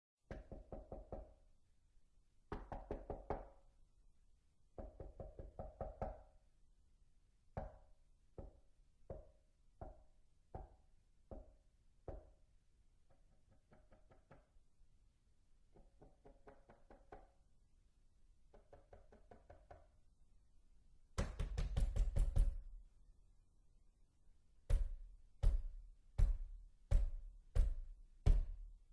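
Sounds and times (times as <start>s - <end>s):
knocking on a door: 2.5s - 3.5s, 21.2s - 22.7s, 24.7s - 28.7s
loud pounding on a door: 21.2s - 22.7s, 24.7s - 28.7s.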